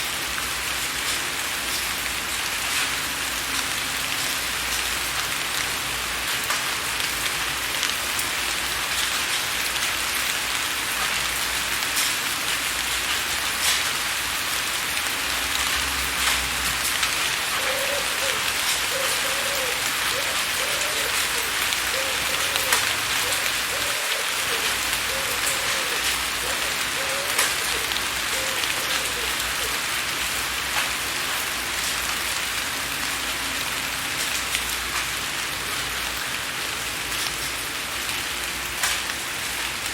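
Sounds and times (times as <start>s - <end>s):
rain on a window pane: 0.0s - 39.9s.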